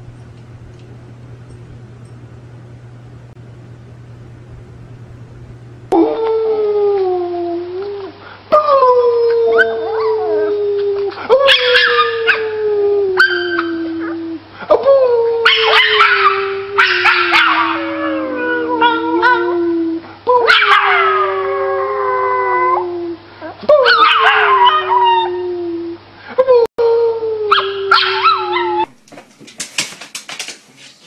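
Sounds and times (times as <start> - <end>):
dog howling: 5.9 - 25.9, 27.1 - 29.0.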